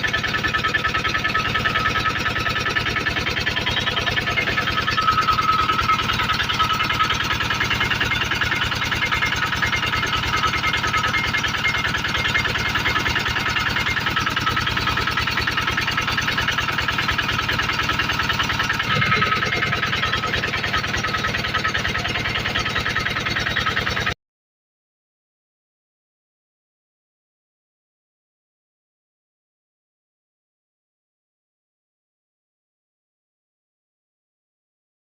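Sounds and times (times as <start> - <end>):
generator engine chugging: 0.0 - 24.2.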